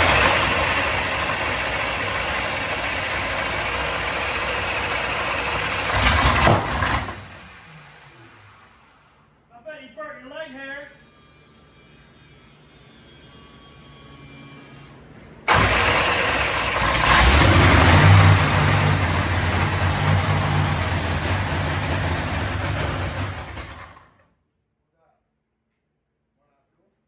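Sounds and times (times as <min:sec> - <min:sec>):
drag racing engine running: 0:00.0 - 0:09.4, 0:15.5 - 0:24.2.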